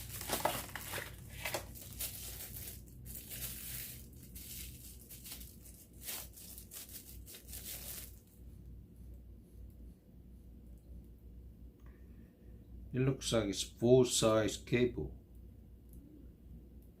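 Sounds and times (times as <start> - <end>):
packaging crinkling and rustling: 0.0 - 8.4.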